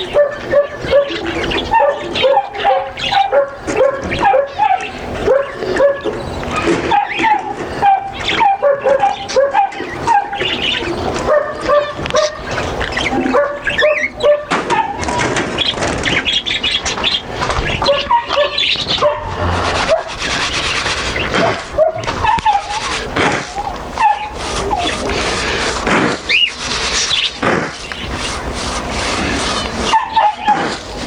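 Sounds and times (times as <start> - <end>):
dogs barking and yipping: 0.0 - 31.0
small birds chirping: 0.0 - 31.0.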